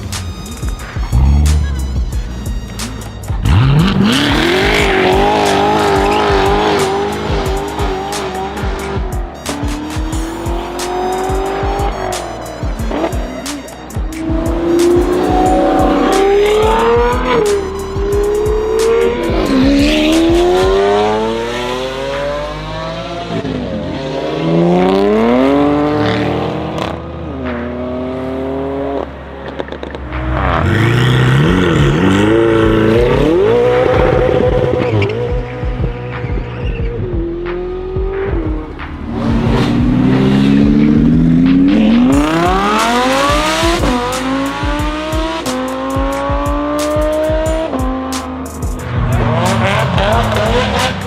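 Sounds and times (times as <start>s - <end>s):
sports car engines revving: 0.0s - 51.0s.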